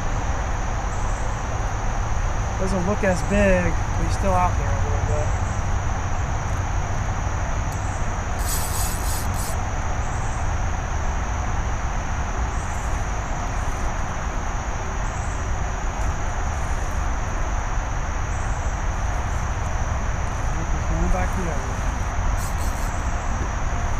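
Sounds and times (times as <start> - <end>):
night insects chorus: 0.0 - 23.9
brief hiss: 8.4 - 9.6, 22.4 - 23.0.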